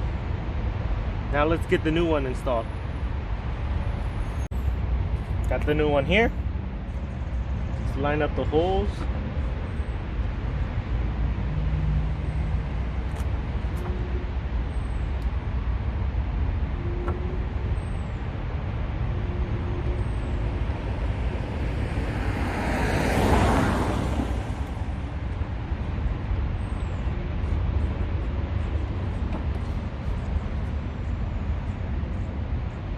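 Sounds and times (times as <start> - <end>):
highway traffic rumble: 0.0 - 32.9
vehicle passing close: 20.6 - 25.5.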